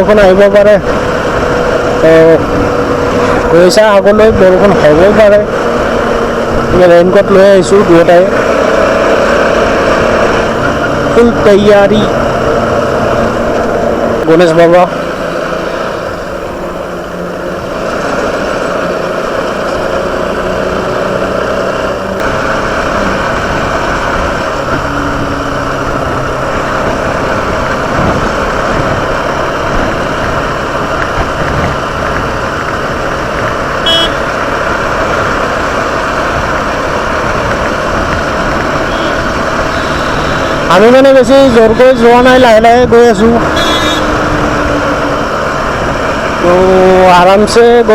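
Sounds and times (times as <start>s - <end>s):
motorcycle engine running: 0.0s - 47.9s
road noise: 0.0s - 47.9s
wind noise: 22.0s - 40.6s, 42.8s - 46.8s
short high-pitched beep: 33.8s - 34.2s.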